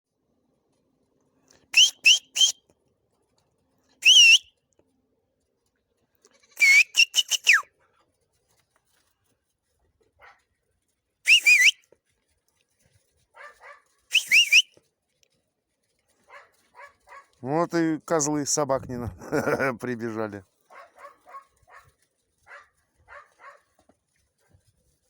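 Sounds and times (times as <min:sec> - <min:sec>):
person whistling: 0:01.8 - 0:02.6, 0:04.0 - 0:04.4, 0:06.6 - 0:07.7, 0:11.3 - 0:11.8, 0:14.1 - 0:14.7.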